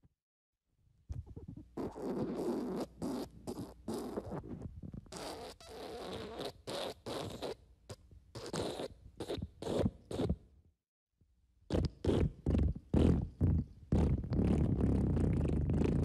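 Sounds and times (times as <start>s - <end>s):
fart sound effects: 11.7s - 16.0s.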